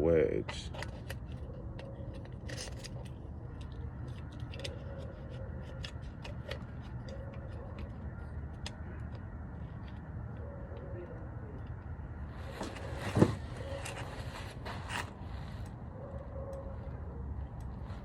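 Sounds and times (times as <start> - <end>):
plastic parts clicking and tapping: 0.4 - 10.1.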